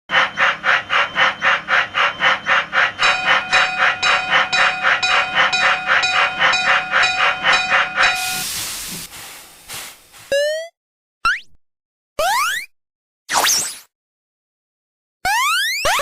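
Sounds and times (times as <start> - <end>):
steam locomotive chuffing: 0.1 - 10.3
steam whistle: 3.0 - 8.7
steam hissing: 8.0 - 10.3.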